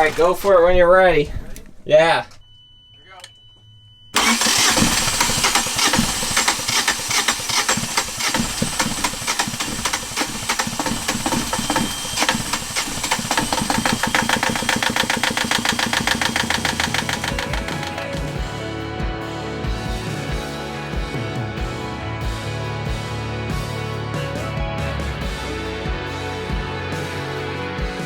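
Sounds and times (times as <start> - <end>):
diesel engine running: 4.2 - 18.6
music: 16.7 - 28.0.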